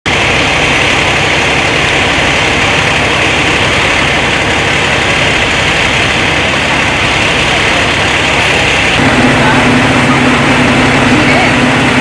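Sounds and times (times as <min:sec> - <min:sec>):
heavy vehicle engine idling: 0:00.1 - 0:12.0.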